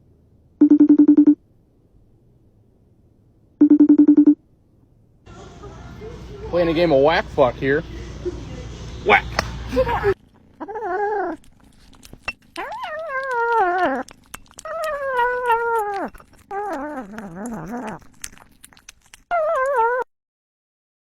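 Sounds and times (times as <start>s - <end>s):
animal drawn-out calls: 9.8s - 18.0s.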